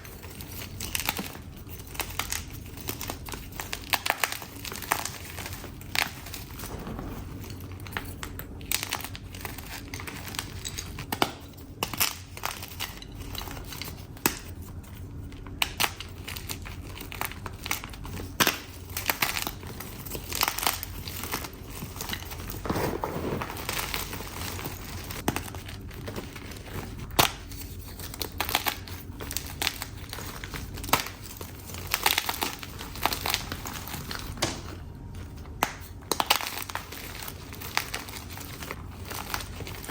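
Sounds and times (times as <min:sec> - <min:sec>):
chalk blocks crunching and cracking: 0:00.0 - 0:39.9
chalk grinding crumble: 0:22.5 - 0:25.2.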